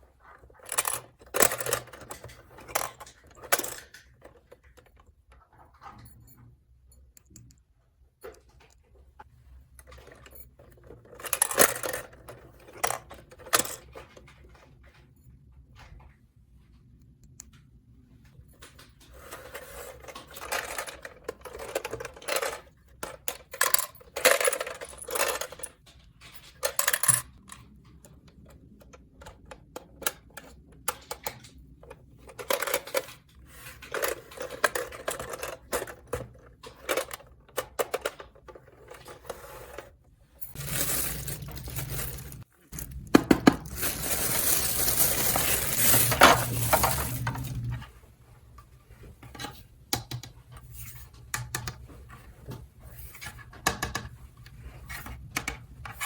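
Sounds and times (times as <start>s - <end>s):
toy pieces clicking and clattering: 40.5s - 47.3s
toy pieces rattling: 40.5s - 47.6s.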